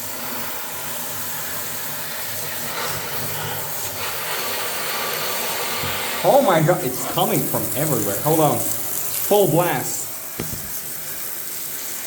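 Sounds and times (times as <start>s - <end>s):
tap water splashing: 5.8s - 6.1s, 10.3s - 11.1s.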